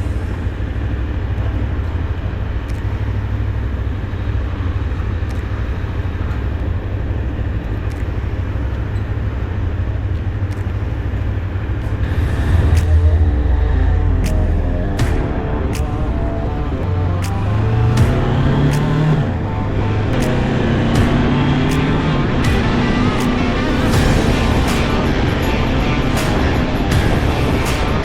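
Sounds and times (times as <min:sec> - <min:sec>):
motorcycle engine rumble: 0:00.0 - 0:28.0
wind on microphone: 0:11.9 - 0:18.2.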